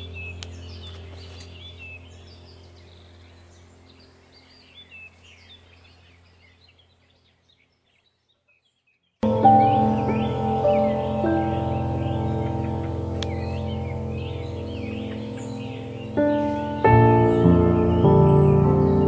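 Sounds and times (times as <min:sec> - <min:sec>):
birds chirping: 0:00.0 - 0:19.0
music: 0:09.2 - 0:19.0
steady low drone: 0:09.2 - 0:19.0.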